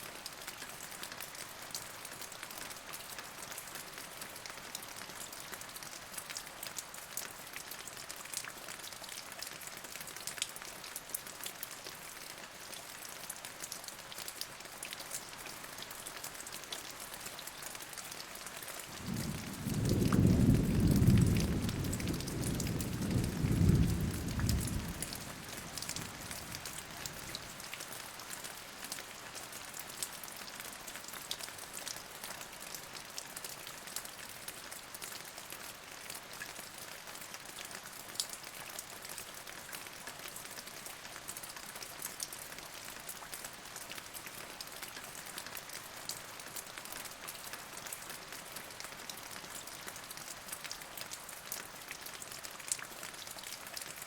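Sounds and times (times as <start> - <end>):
steady rain: 0.0 - 54.0
thunder rumbling: 19.0 - 25.1.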